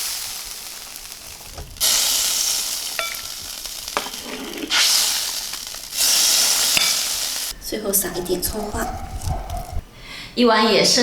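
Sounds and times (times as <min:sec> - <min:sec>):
boiling soup hissing: 0:00.0 - 0:07.6
ladle clinking: 0:01.4 - 0:09.8.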